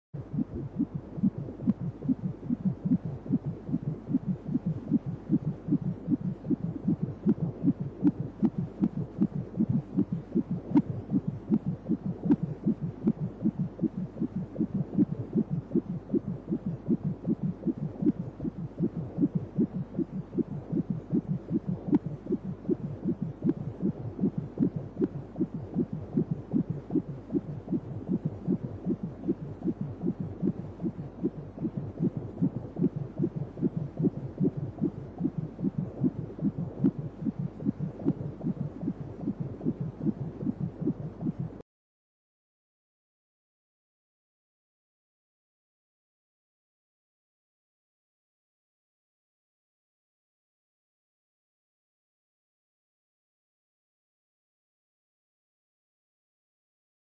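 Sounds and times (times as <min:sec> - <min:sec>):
fetal heartbeat on doppler: 0:00.2 - 0:41.6.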